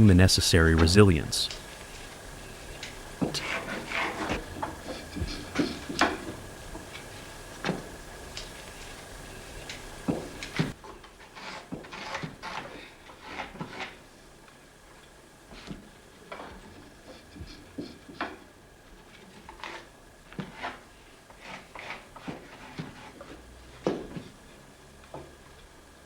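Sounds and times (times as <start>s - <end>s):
faint high hum: 0.0s - 10.8s.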